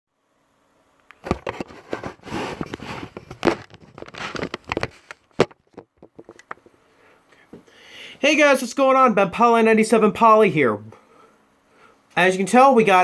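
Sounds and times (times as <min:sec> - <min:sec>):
handling clicks and knocks: 0:03.2 - 0:06.7.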